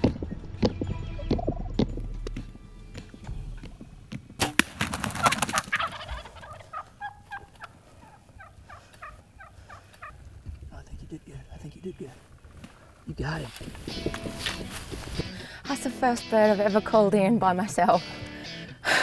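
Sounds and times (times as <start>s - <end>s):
wing-flapping and thrashing: 4.3s - 7.6s
short turkey calls: 4.8s - 10.4s.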